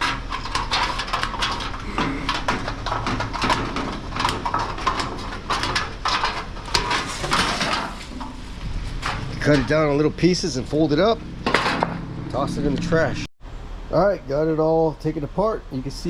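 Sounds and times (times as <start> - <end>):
sheet metal crinkling and clattering: 0.0 - 12.1.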